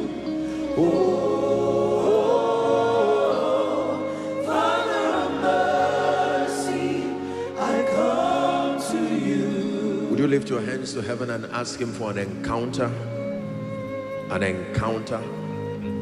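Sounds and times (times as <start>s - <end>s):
choir singing gospel song: 0.0s - 12.2s.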